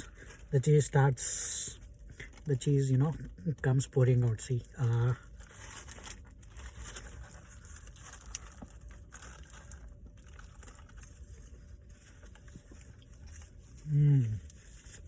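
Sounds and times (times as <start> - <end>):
food wrapper rustling and crinkling: 4.4 - 15.0.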